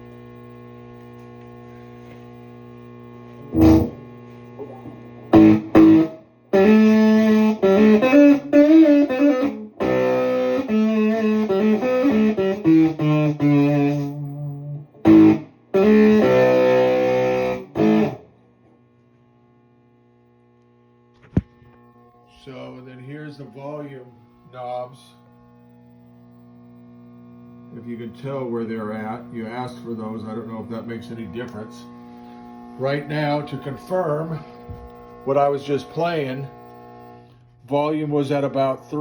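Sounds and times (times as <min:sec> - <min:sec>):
overdriven electric guitar chords: 0:00.0 - 0:18.8, 0:29.0 - 0:37.4
low mains hum: 0:00.0 - 0:39.0.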